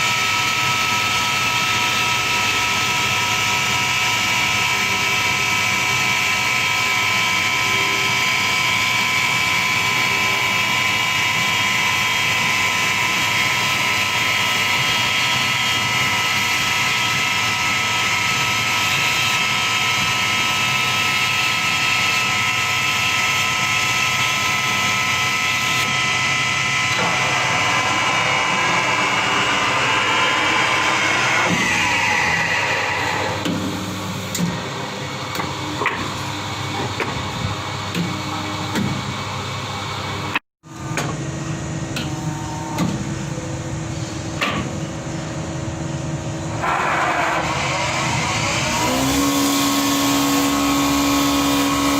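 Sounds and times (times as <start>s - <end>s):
wood lathe whining: 0.0s - 33.5s, 46.5s - 51.9s.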